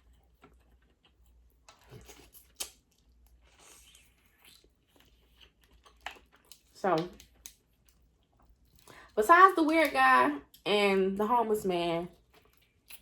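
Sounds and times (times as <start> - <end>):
soft chewing: 0.0 - 9.2, 12.1 - 13.0
seafood shells cracking: 5.2 - 9.0.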